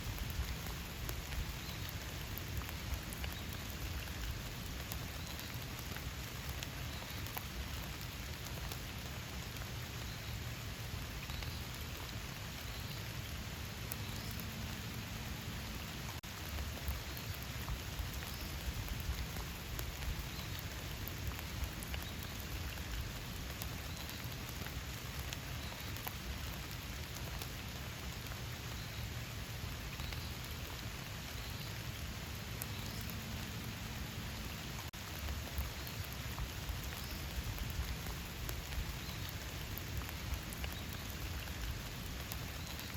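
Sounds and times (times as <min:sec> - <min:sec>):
raindrops tapping close by: 0:00.0 - 0:42.9
steady rain hiss: 0:00.0 - 0:42.9.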